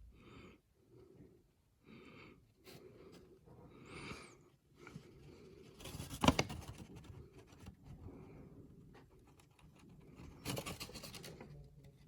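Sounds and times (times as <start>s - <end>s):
rustling: 4.8s - 12.0s
light scraping: 5.6s - 12.0s.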